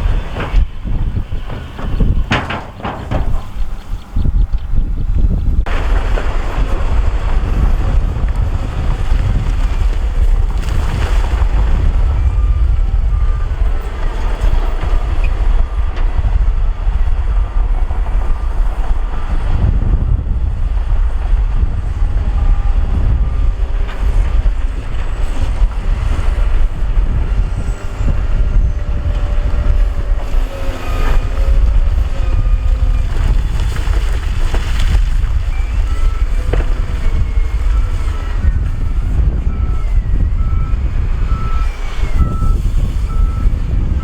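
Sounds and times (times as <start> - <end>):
heavy machinery engines rumbling: 0.0 - 44.0
wind buffeting microphone: 0.0 - 44.0
back-up alarm beeps: 39.5 - 43.5.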